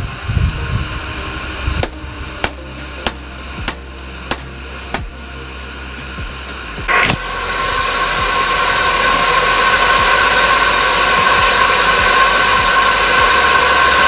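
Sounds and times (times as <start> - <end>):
steady low hum: 0.0 - 14.0
hammer striking hot metal on anvil: 1.8 - 5.2.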